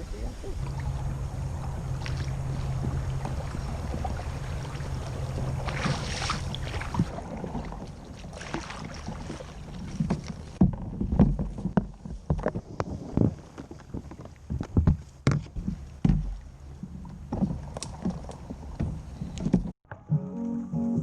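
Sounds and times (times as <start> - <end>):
steady low rumble: 0.0 - 8.1
paddle swishing through water: 0.2 - 19.8
knocks and thumps: 9.9 - 19.7.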